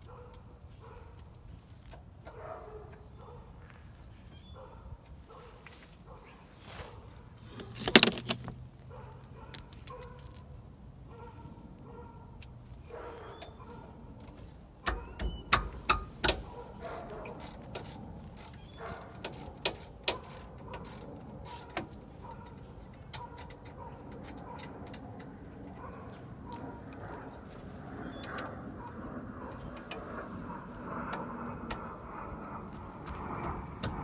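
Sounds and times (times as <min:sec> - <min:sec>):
metal tools clinking: 0:07.4 - 0:08.6.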